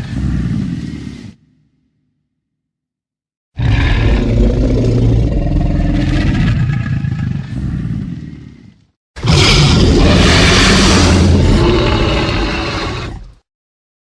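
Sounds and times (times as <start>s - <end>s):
deep rough dinosaur roar: 3.6s - 13.4s.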